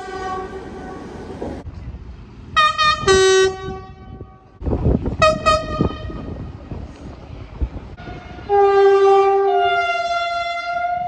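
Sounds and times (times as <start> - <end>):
train horn: 0.0 - 1.0, 2.6 - 4.5, 5.2 - 6.4, 8.0 - 11.0
train rumbling: 0.0 - 10.9.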